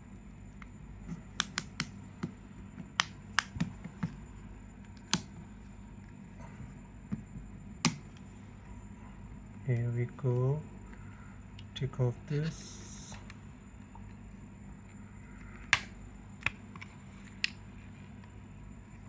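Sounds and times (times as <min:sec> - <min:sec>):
plastic clips popping free: 0:01.4 - 0:01.9, 0:15.6 - 0:16.6.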